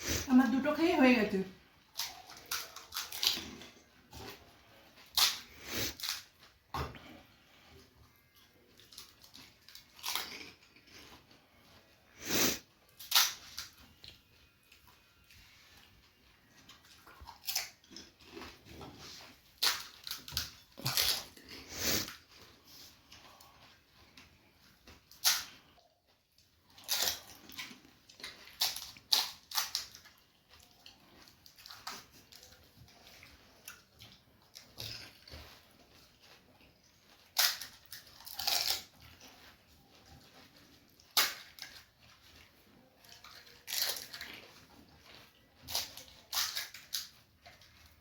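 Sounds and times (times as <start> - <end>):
crisp shells crunching: 37.2 - 39.0.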